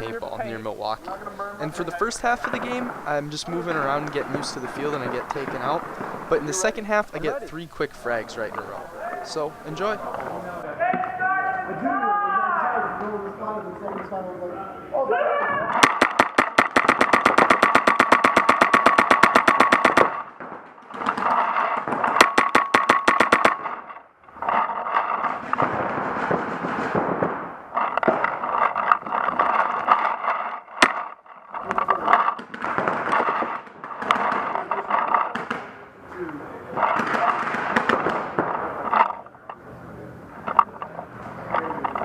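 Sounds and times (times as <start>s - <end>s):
ragged field noise: 0.0s - 11.8s, 15.7s - 42.0s
paintball marker firing: 1.1s - 11.2s, 15.7s - 35.9s, 36.7s - 39.7s.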